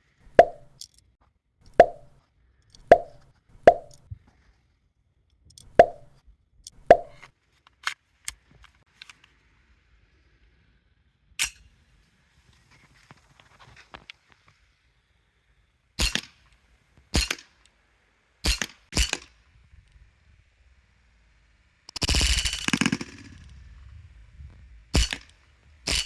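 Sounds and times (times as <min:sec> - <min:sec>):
bb pistol firing pops: 0:00.3 - 0:00.8, 0:01.7 - 0:02.2, 0:02.8 - 0:04.0, 0:05.7 - 0:06.2, 0:06.8 - 0:07.2.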